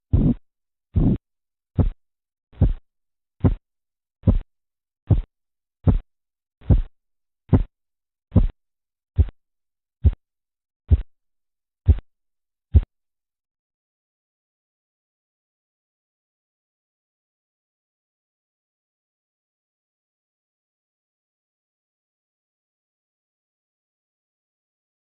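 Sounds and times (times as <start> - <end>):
pulse thumps through a stethoscope: 0.1 - 0.4, 1.0 - 1.2, 1.8 - 2.0, 2.6 - 2.8, 3.4 - 3.6, 4.2 - 4.5, 5.1 - 6.9, 7.5 - 7.7, 8.3 - 8.6, 9.2 - 9.4, 10.9 - 11.1, 11.9 - 12.1, 12.7 - 12.9.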